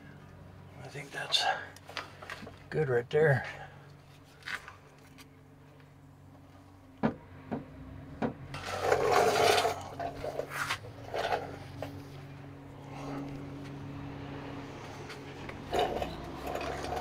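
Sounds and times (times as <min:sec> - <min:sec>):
sharp knocks: 0:07.0 - 0:08.4
metal hinge scraping: 0:08.5 - 0:12.0, 0:15.3 - 0:17.0.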